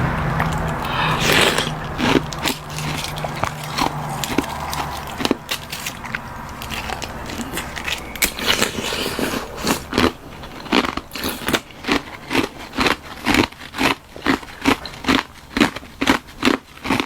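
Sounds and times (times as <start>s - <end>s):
ice cracking and crackling: 0.4s - 9.8s.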